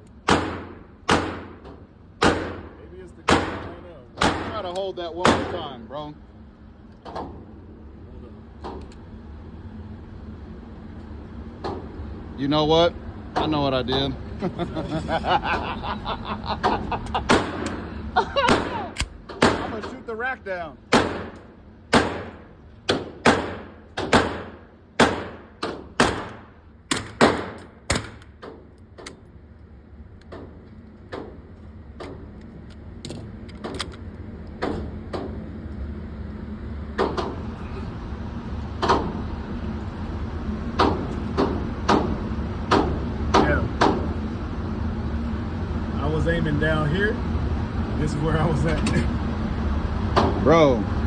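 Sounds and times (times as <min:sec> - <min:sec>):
low hum: 0:00.0 - 0:51.0
carbine gunshots echoing: 0:00.3 - 0:01.6, 0:02.2 - 0:04.6, 0:20.9 - 0:22.5, 0:23.2 - 0:28.2.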